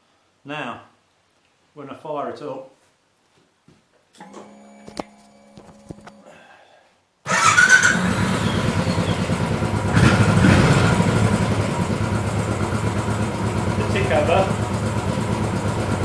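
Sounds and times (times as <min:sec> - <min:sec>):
motorcycle engine starting and idling: 0:07.3 - 0:16.0.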